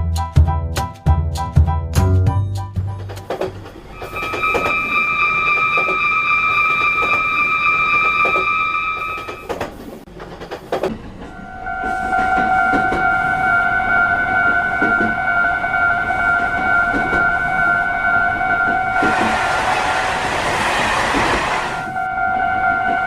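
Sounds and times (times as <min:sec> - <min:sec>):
train wheels clacking on rails: 0:03.0 - 0:13.2, 0:18.5 - 0:22.0
train horn: 0:04.0 - 0:09.5, 0:11.3 - 0:23.0.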